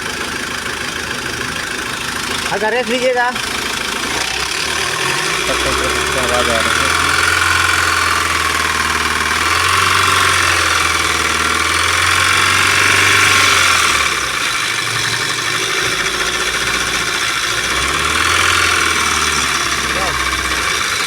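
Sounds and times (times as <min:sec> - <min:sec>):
diesel engine revving: 0:00.0 - 0:21.0
engine knocking: 0:00.0 - 0:21.0.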